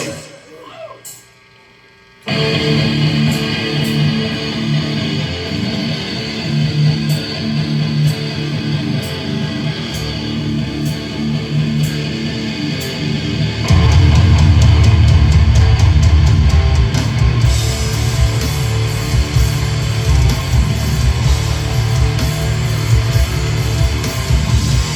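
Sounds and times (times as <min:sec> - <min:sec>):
electric guitar playing: 0:02.3 - 0:24.9
heavy metal band playing: 0:02.3 - 0:24.9
fast drumming: 0:13.6 - 0:24.9.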